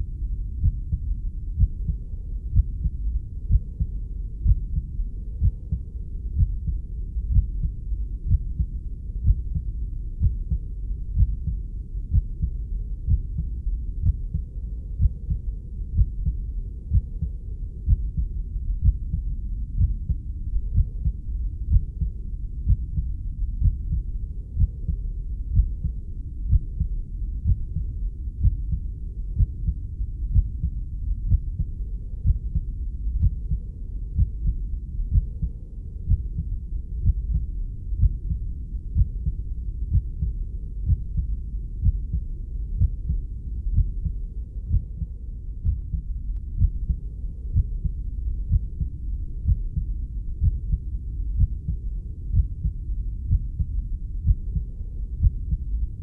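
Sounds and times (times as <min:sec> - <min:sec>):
continuous low rumble: 0:00.0 - 0:56.0
heartbeat thuds: 0:00.5 - 0:56.0.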